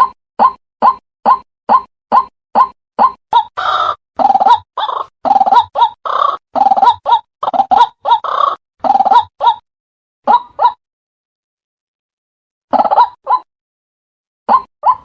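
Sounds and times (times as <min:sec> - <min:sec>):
bird clucking notes: 0:00.4 - 0:09.6, 0:10.2 - 0:10.8, 0:12.7 - 0:13.5, 0:14.5 - 0:15.0
bird harsh croaking: 0:03.0 - 0:09.6.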